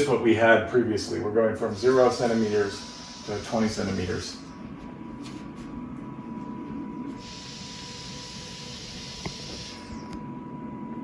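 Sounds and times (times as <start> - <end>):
steady high tone: 1.6 - 4.6, 5.9 - 11.0.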